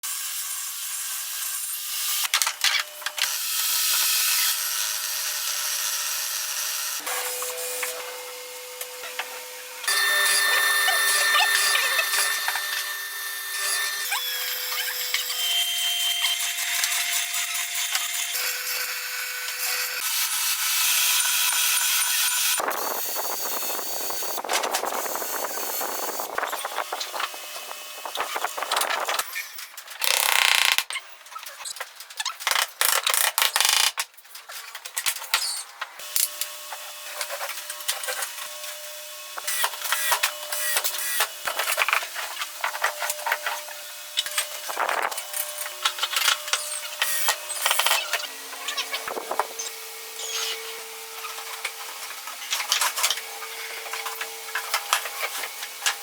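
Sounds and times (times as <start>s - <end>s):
power tool whine: 3.2s - 30.8s, 36.0s - 41.5s, 42.4s - 56.0s
sawing or sanding noise: 20.0s - 30.2s.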